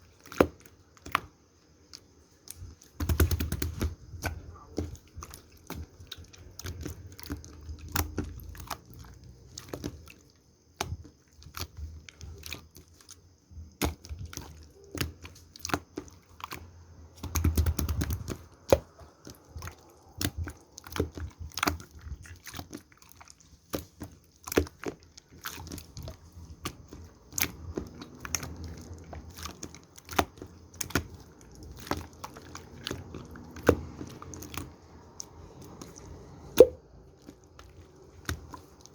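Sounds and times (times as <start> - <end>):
slime clicking and popping: 2.5 - 10.0, 17.2 - 21.9, 22.5 - 36.9.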